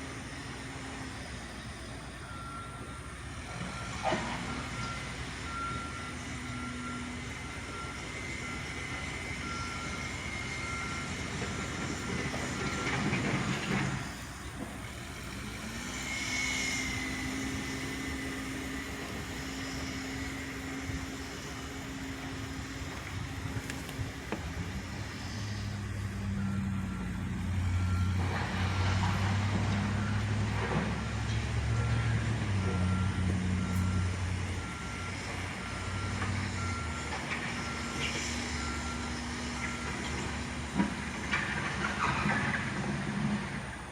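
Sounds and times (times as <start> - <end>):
reversing alarm beeping: 0.0 - 42.9
backhoe diesel engine running: 0.0 - 43.9.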